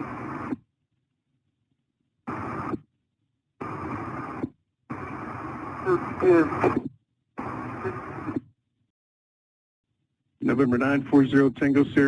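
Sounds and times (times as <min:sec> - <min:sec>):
radio static hiss bursts: 0:00.0 - 0:00.6, 0:02.3 - 0:02.8, 0:03.6 - 0:08.4.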